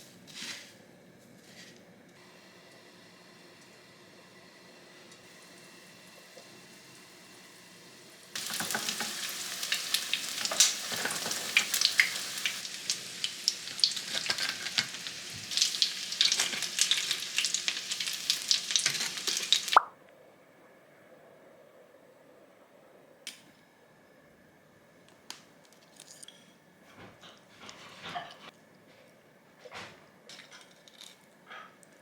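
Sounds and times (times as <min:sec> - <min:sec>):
food sizzling in hot oil: 0:04.4 - 0:19.9.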